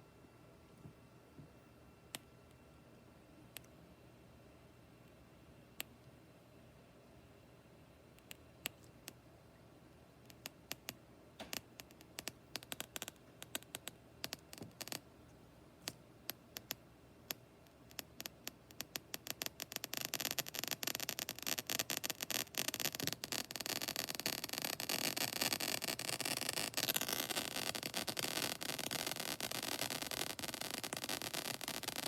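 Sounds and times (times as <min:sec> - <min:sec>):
noise module crackling: 0:10.2 - 0:15.1, 0:15.8 - 0:32.0.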